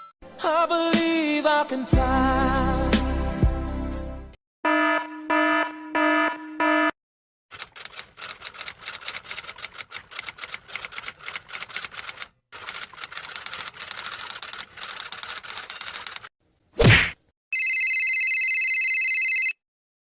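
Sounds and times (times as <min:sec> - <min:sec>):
typewriter keystrokes clacking: 0:07.5 - 0:16.3.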